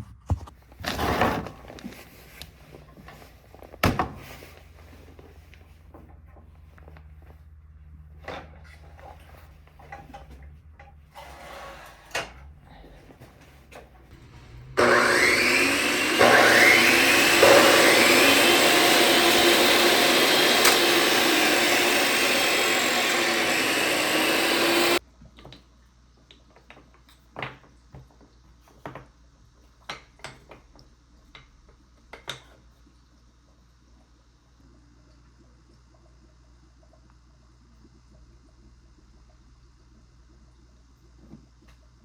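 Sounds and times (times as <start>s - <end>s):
power tool motor cutting wood: 14.1s - 25.0s.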